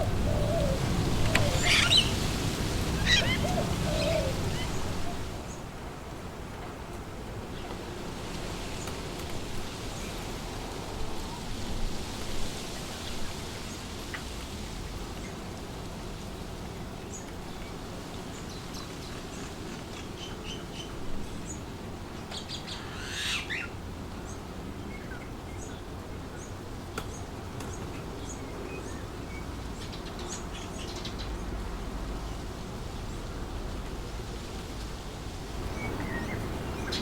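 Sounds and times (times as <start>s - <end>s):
loud bird call: 0.0s - 5.4s
small birds chirping: 0.0s - 5.7s, 35.6s - 37.0s
wind through trees: 0.0s - 37.0s.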